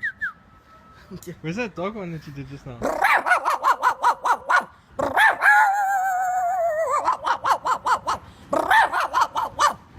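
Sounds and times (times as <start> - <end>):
man imitating dog yapping: 2.8 - 9.8
man howling like a dog: 5.0 - 9.5.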